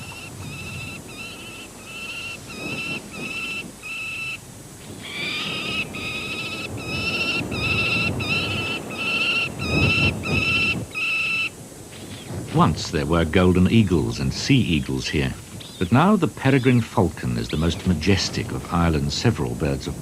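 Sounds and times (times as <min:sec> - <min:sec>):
falcon harsh calls: 0:00.0 - 0:04.4, 0:05.0 - 0:11.6.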